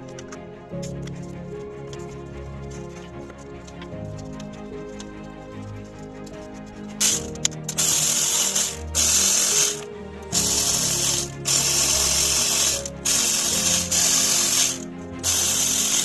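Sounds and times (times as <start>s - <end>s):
power ratchet running bolts: 7.0s - 16.0s.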